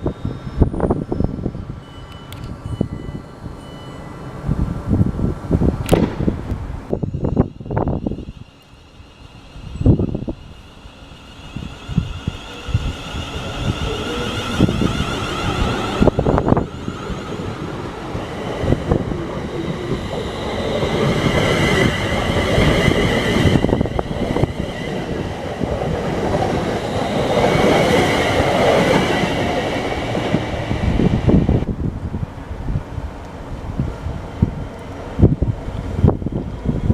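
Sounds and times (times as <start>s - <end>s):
train wheels rumbling on rails: 4.6s - 36.9s
high thin wheel squeal: 7.0s - 19.0s, 19.6s - 25.4s.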